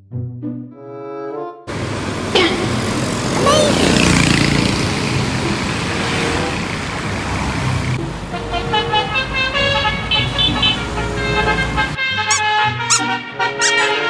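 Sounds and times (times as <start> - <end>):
vehicle noise: 1.7 - 12.0
multi-tone bus horn tune: 1.7 - 14.0.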